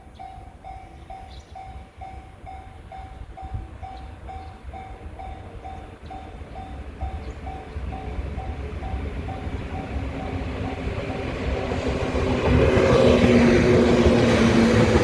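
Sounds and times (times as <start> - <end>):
level-crossing warning bell: 0.0 - 11.6
train rumble: 0.0 - 15.0.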